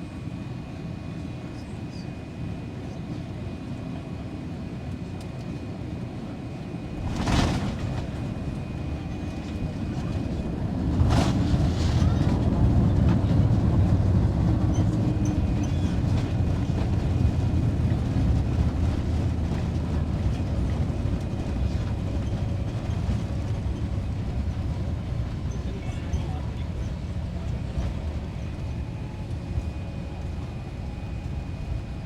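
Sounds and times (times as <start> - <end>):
runway rumble: 6.4 - 32.0.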